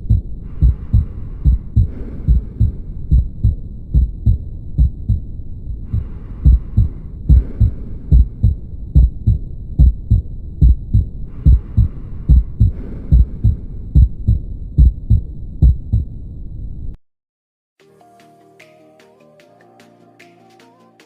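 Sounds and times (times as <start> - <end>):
fast heartbeat thumps: 0.0 - 16.2.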